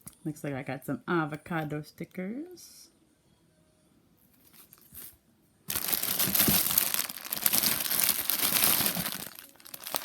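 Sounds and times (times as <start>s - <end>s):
packaging crinkling: 5.7s - 10.0s.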